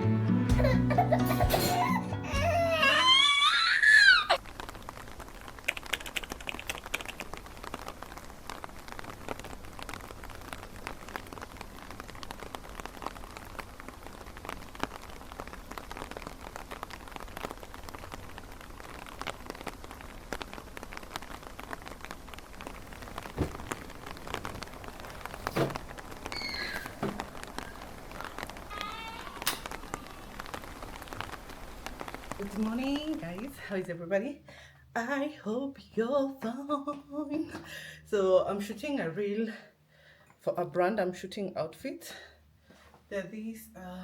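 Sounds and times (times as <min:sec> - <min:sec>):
rain falling: 0:00.5 - 0:34.0.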